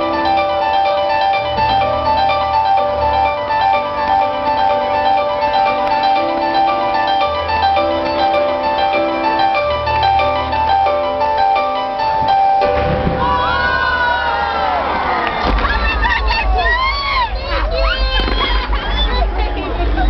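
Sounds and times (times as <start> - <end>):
keyboard music with bass line: 0.0 - 14.8
crowd cheering and shouting: 12.7 - 20.0.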